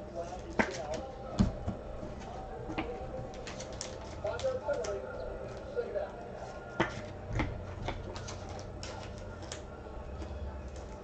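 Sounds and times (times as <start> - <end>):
cards clicking and rustling: 2.7 - 5.7, 6.8 - 11.0.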